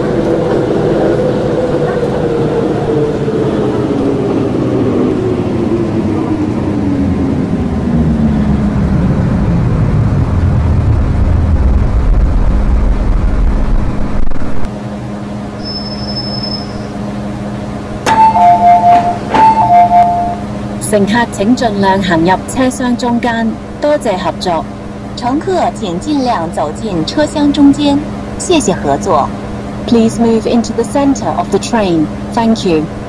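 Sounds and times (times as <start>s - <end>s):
traction motor whine: 15.5s - 20.9s
two-tone electronic chime: 18.1s - 20.5s.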